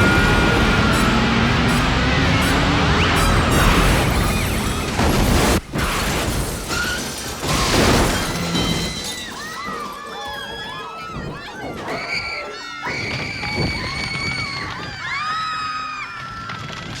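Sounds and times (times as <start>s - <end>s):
glass breaking: 0.0s - 10.0s
car crash impacts: 0.0s - 10.1s.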